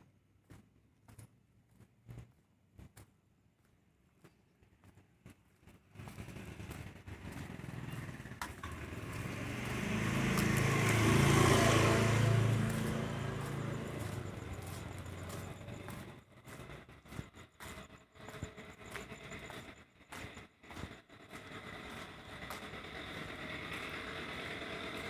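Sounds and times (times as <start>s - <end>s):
vehicle engine passing by: 5.9s - 25.0s.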